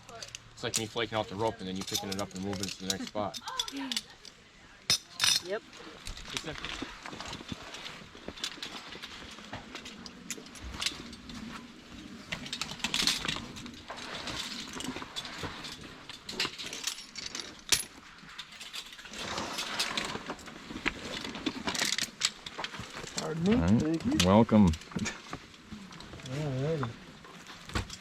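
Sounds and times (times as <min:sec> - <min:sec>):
metal climbing hardware clinking: 0:00.0 - 0:28.0
knocks and rustling: 0:05.8 - 0:28.0.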